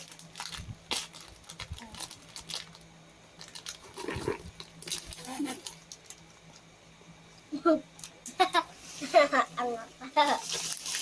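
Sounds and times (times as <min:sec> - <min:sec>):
louder packet rustle: 0:00.0 - 0:02.8, 0:03.4 - 0:06.2, 0:10.3 - 0:11.0
snack packet crinkling: 0:00.0 - 0:06.6, 0:10.4 - 0:11.0.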